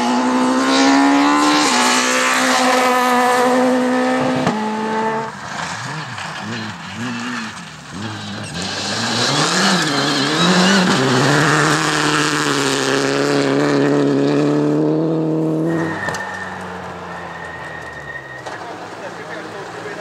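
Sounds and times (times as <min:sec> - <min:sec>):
rally car engine at full throttle: 0:00.0 - 0:20.0.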